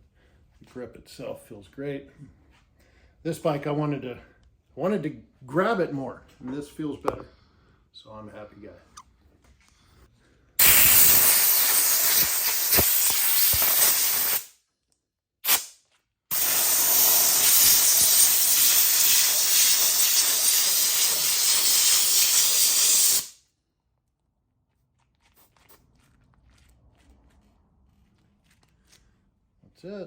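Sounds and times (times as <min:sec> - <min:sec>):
loud steady hiss blasts: 0:10.6 - 0:14.5, 0:16.3 - 0:23.4.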